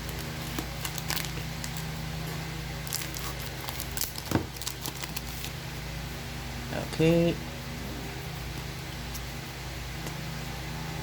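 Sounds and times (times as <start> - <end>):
trading cards and wrappers rustling: 0.0 - 1.9, 2.8 - 5.6
steady low hum: 0.0 - 11.0.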